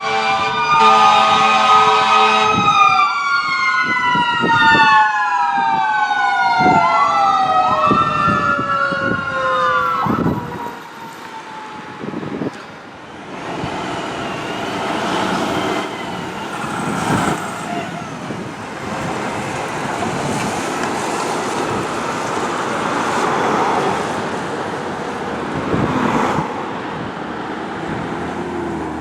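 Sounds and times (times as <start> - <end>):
air horn blast: 0.0 - 2.7
fire truck siren wailing: 0.0 - 29.0
road noise: 0.0 - 29.0.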